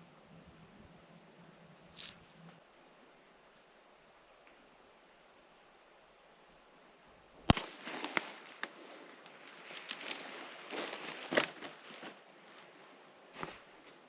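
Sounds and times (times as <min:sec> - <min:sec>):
footsteps crunching on dry ground: 0:01.9 - 0:02.3, 0:07.5 - 0:13.7.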